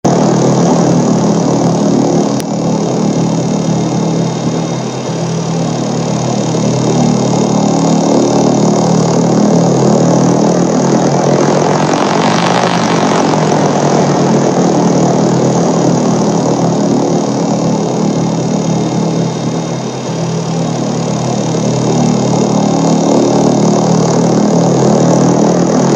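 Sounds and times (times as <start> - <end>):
low electronic drone: 0.0 - 25.9
noisy rumbling wash: 0.0 - 25.9.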